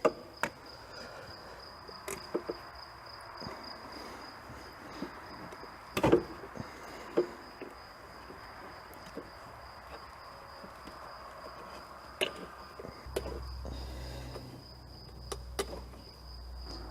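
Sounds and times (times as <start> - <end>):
hand tools clicking and knocking: 0.0 - 0.6, 2.0 - 2.7, 11.6 - 13.4.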